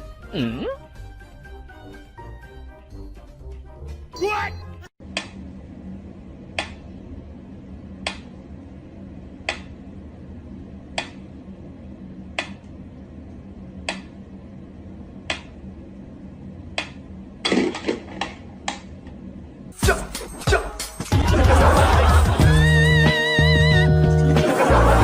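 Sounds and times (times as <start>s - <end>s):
low steady hum: 5.0s - 19.8s.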